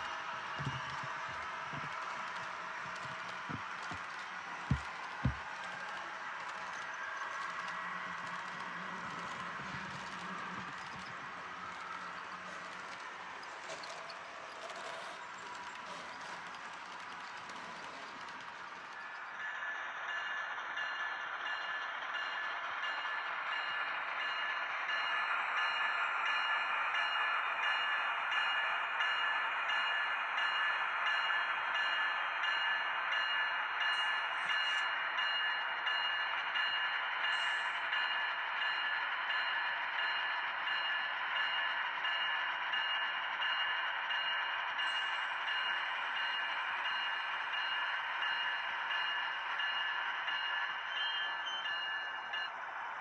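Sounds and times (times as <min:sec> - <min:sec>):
model train electric whir: 0:00.0 - 0:25.7
faint ticks of train on track: 0:00.0 - 0:53.0.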